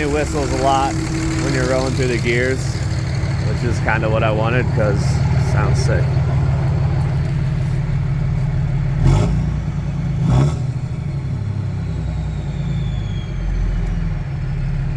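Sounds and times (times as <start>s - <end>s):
turbo whistle spooling down: 0.0s - 3.0s, 11.8s - 14.2s
diesel engine running: 0.0s - 14.9s.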